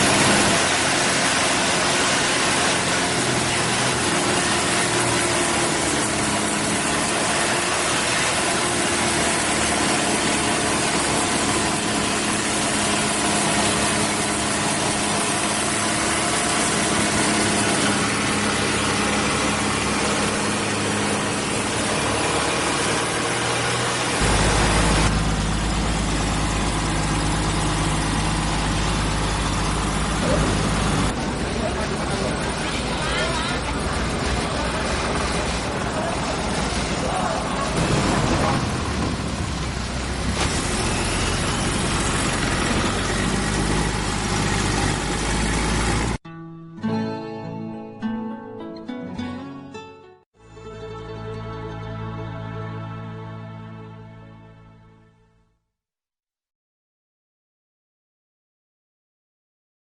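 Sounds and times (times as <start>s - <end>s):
boat engine running: 0.0s - 46.2s
heavy low rumble: 24.2s - 46.2s.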